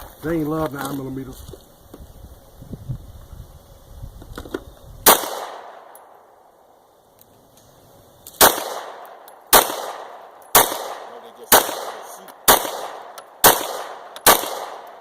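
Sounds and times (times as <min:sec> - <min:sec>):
handgun shots echoing: 0:05.1 - 0:06.1, 0:08.3 - 0:15.0.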